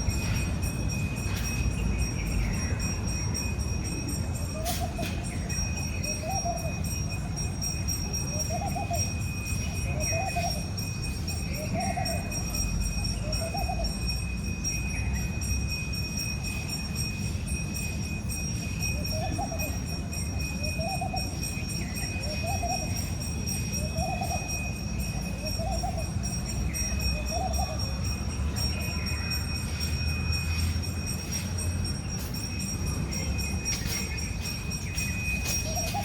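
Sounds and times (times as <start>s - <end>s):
high-pitched tones: 0.0s - 36.0s.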